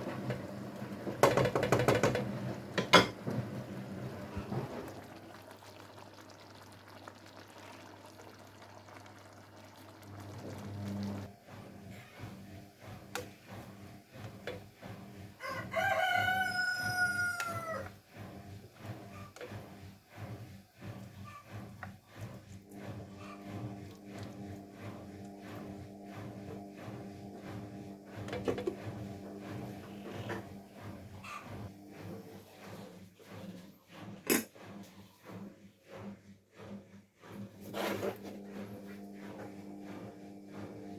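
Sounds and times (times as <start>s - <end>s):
rooster crowing: 15.4s - 17.9s.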